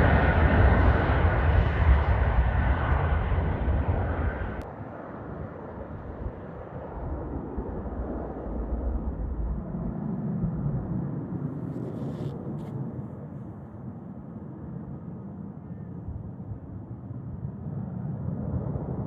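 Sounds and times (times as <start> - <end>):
jet engines rumbling: 0.0 - 19.0.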